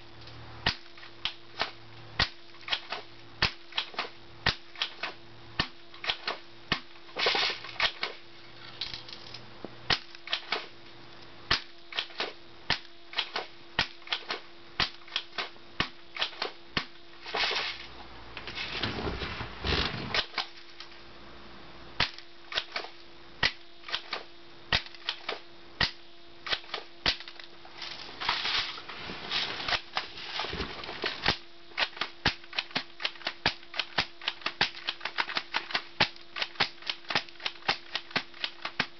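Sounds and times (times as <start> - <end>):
faint steady hum: 0.0 - 38.9
pellets hitting plastic case: 28.2 - 31.4.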